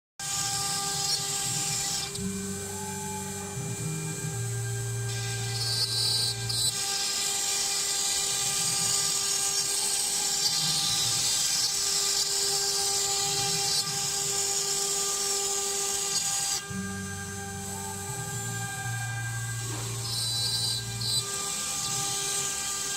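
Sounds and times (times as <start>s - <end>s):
router spindle cutting hiss: 0.2s - 22.9s
low hum: 16.6s - 22.1s.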